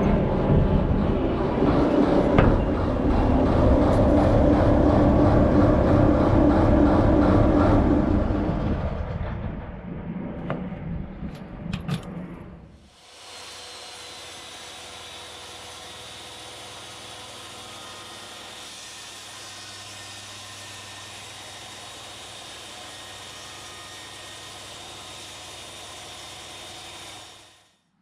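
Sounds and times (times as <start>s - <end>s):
mechanical running noise with whine: 0.0s - 13.0s.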